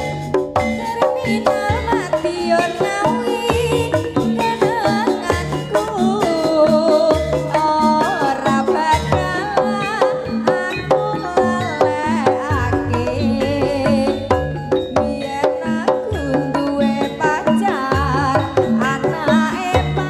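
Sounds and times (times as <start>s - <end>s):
hand drums playing busy rhythm: 0.0s - 20.0s
ornamented melody line: 11.6s - 15.6s
deep low note: 12.4s - 15.2s.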